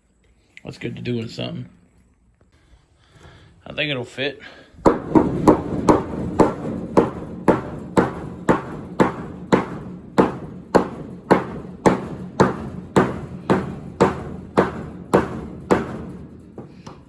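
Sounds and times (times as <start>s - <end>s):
hammer striking wood: 4.8s - 17.0s.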